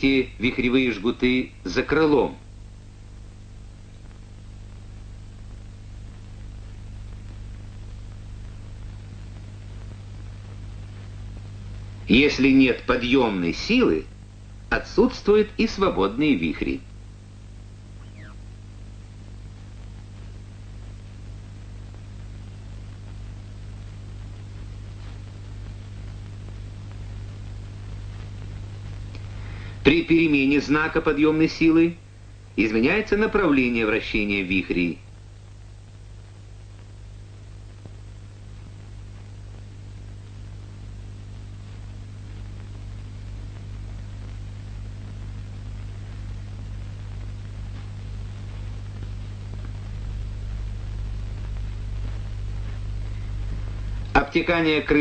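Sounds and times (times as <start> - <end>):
low electrical hum with hiss: 0.0 - 55.0.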